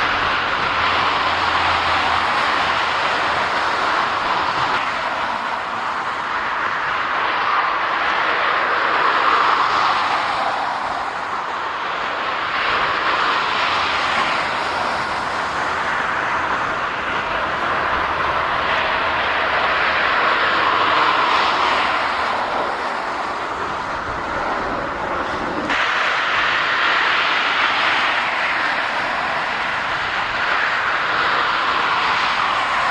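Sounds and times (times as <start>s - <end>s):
jet engines rushing: 0.0s - 32.9s.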